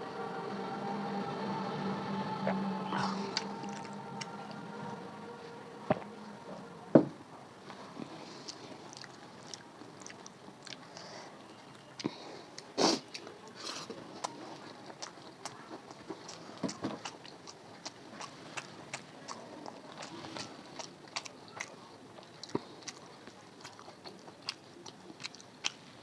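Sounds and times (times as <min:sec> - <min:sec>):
person chewing food: 0:08.0 - 0:26.0.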